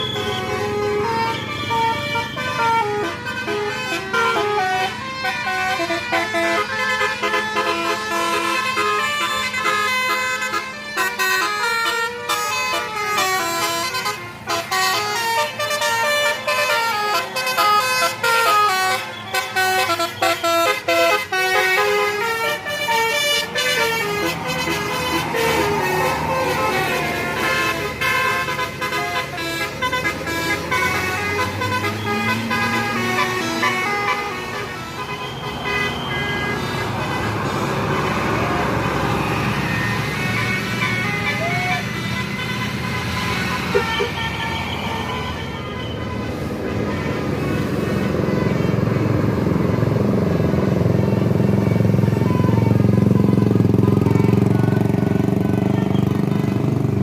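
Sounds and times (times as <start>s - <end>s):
electric musical horns playing: 0.0s - 45.6s.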